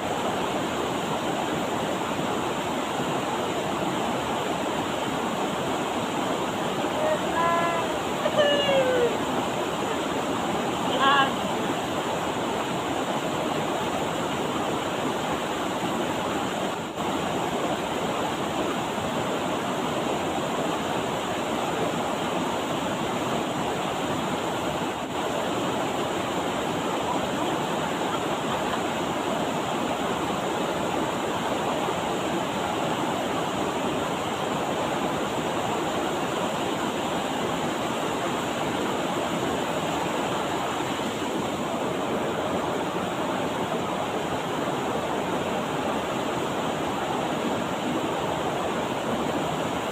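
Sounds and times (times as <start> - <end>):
river water rushing: 0.0 - 49.9.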